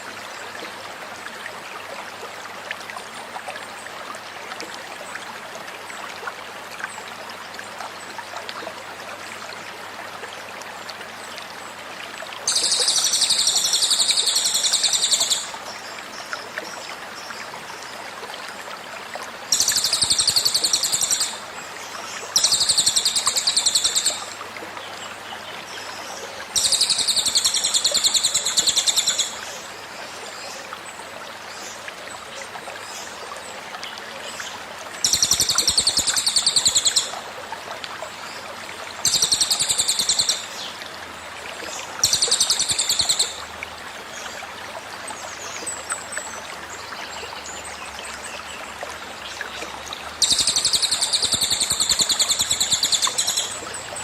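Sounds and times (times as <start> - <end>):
flowing stream water: 0.0 - 54.0
bird high trilling song: 50.2 - 53.7.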